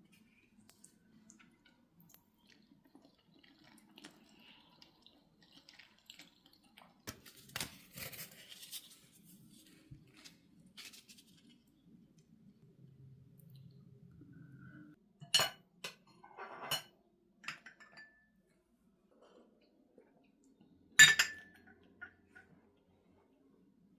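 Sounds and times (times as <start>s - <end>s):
soft chewing with clicks: 0.0s - 7.2s.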